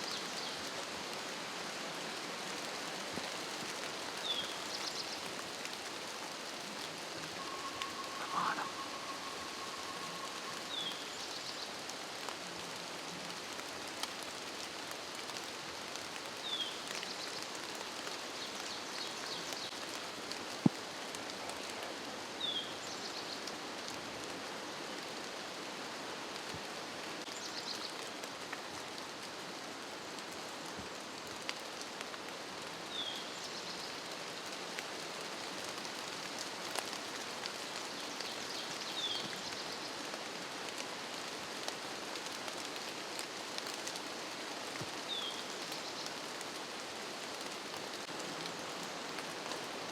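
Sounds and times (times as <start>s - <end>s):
rain falling: 0.0s - 49.9s
songbird repeating short phrase: 7.4s - 10.9s.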